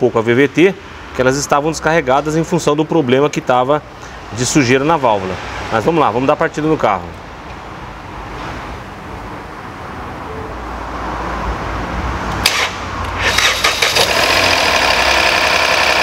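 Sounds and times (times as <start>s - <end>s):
car engine starting: 12.4s - 16.0s
fast knocking rattle: 13.3s - 16.0s.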